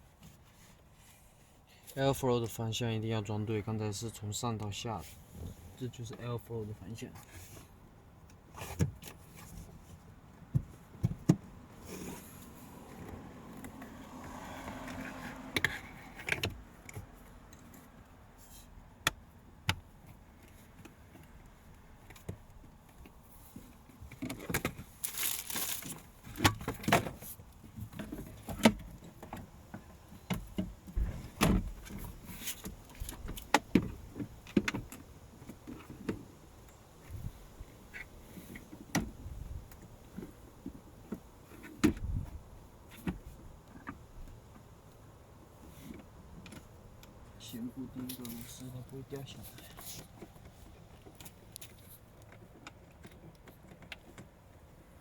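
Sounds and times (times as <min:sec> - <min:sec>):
scraping and rustling: 0:22.8 - 0:30.2.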